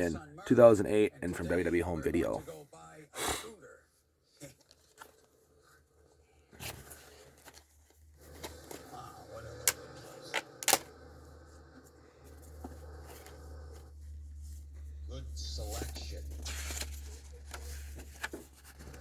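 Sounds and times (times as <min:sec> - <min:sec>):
low hum: 0:08.1 - 0:19.0.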